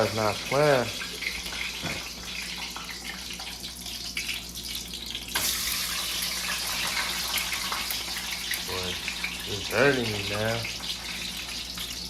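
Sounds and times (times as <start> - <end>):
fries sizzling in hot oil: 0.0 - 12.0.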